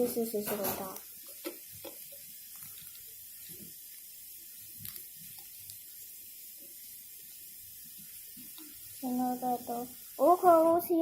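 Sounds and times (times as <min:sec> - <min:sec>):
steady hiss: 0:00.0 - 0:11.0
soft taps and rustles of packet: 0:01.0 - 0:05.9.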